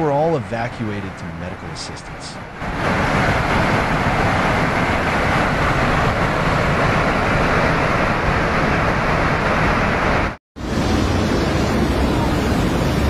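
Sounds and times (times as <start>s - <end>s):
river water rushing: 2.4s - 13.0s.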